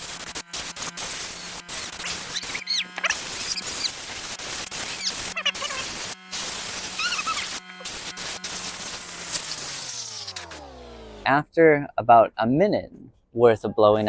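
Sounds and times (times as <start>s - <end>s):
compressed air hissing from nozzle: 0.0s - 10.6s
short squeaky whistles: 2.3s - 4.0s, 7.0s - 7.5s.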